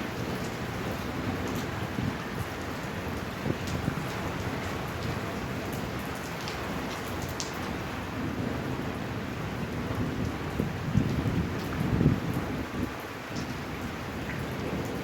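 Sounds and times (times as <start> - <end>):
heavy rain: 0.0 - 15.0.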